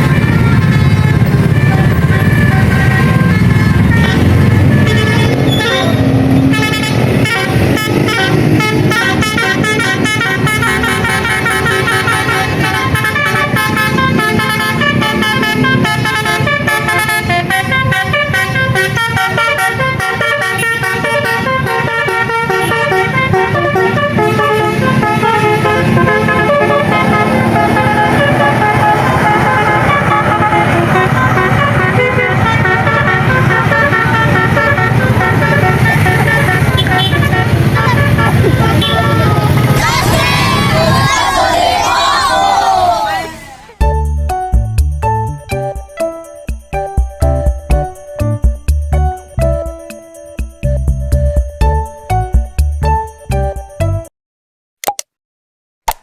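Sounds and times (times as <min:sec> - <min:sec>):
musical air horn melody: 0:00.0 - 0:41.4
bus engine running: 0:00.0 - 0:54.0.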